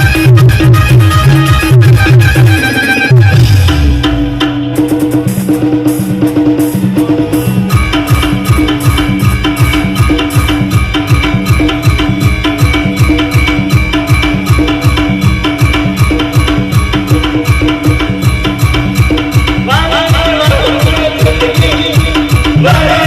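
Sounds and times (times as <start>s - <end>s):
melodic line: 0.0s - 4.1s
fast steady drum beat: 0.0s - 23.0s.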